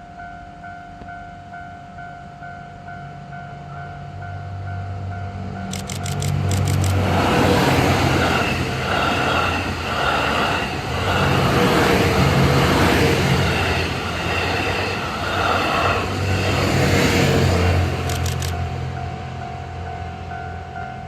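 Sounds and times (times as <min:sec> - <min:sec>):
train wheels rumbling on rails: 0:00.0 - 0:21.0.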